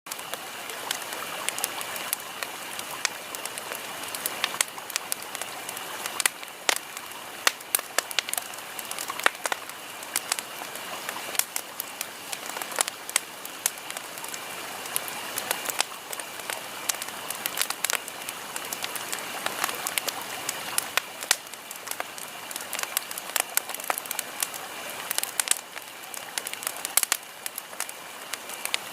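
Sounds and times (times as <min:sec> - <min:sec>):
bonfire crackling and popping: 0:00.1 - 0:28.9.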